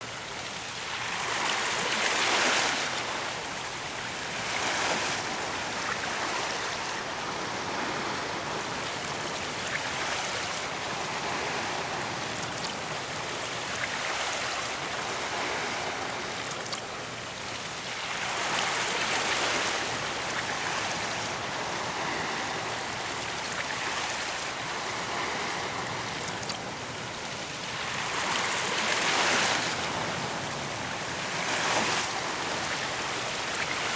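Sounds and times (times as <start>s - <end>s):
ocean waves breaking on beach: 0.0s - 33.9s.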